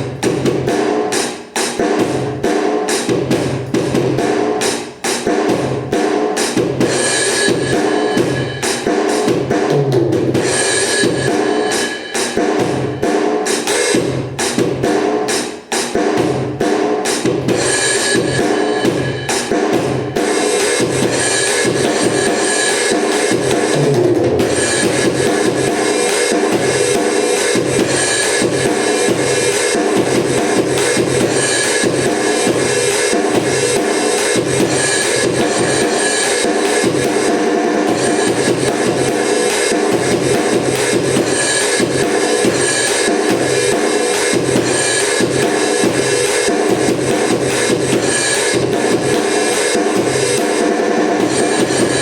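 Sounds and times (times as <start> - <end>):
backing music: 0.0 - 52.0
electronic drum hits: 16.0 - 52.0.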